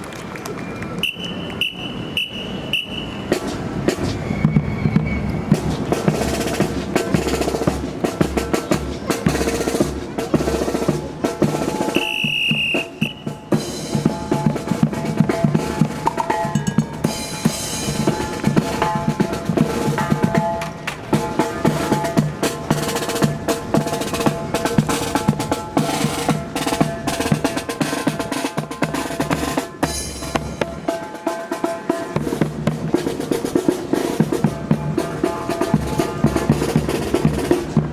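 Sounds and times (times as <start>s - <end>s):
marching brass band playing: 1.0s - 37.9s
snare drum rolls: 1.0s - 37.9s.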